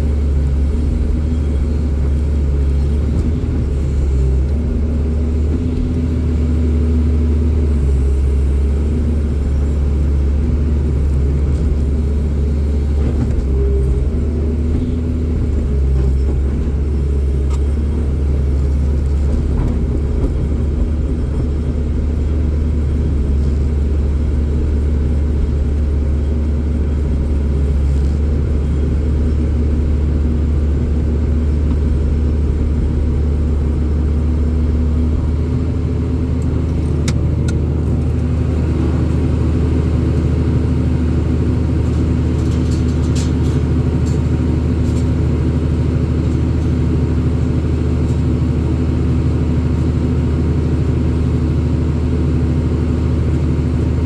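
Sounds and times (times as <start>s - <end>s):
vehicle engine rumbling: 0.0s - 54.0s.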